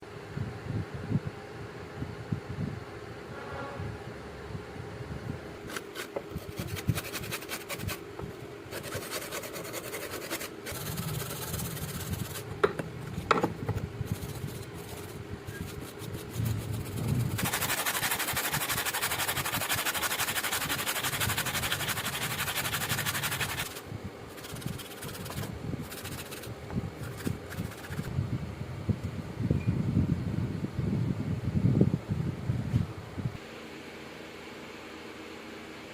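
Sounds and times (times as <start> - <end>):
knife blade scraping: 5.6 - 8.0, 14.1 - 28.1.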